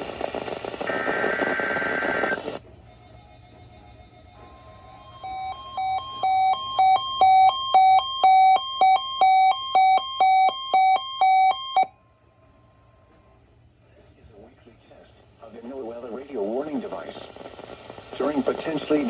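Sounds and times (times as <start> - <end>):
steady alarm tone: 3.5 - 11.9
weather radio alert beeps: 5.2 - 11.9.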